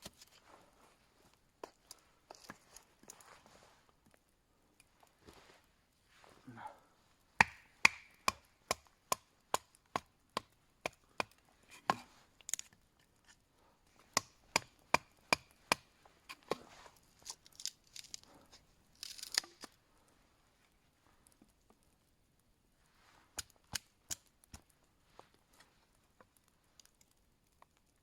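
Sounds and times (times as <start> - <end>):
blade chopping wood: 7.4 - 12.1, 14.1 - 16.7.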